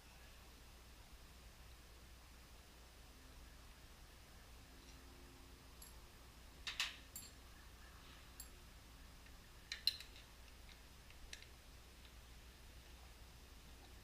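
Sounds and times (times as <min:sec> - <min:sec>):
hand tools and metal parts clinking: 0:06.7 - 0:07.4.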